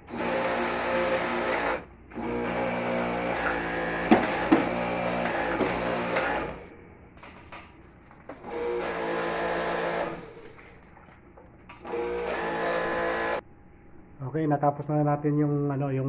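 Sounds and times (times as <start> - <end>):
pressure washer motor humming: 0.0 - 6.7, 8.3 - 10.8, 11.7 - 13.4.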